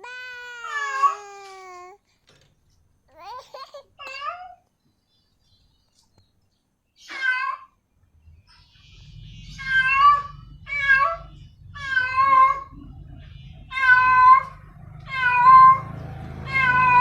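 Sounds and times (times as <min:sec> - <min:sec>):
cat meowing: 0:09.6 - 0:12.8, 0:13.7 - 0:17.0.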